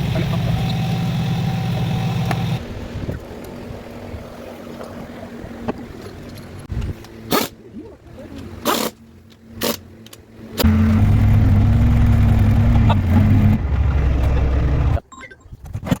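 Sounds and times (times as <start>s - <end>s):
diesel engine running: 0.0s - 2.9s, 10.6s - 15.0s.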